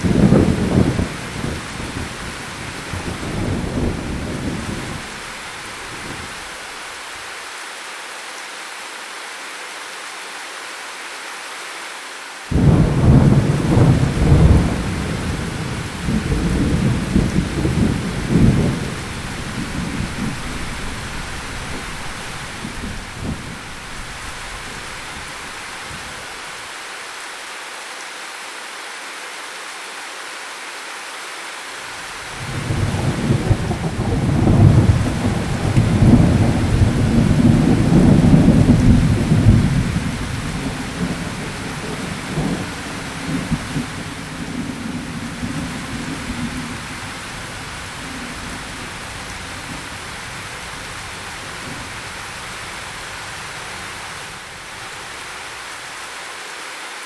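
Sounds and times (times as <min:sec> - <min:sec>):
thunder rumbling: 0:00.0 - 0:06.5, 0:12.5 - 0:26.4, 0:32.2 - 0:55.2
steady rain: 0:00.0 - 0:57.0.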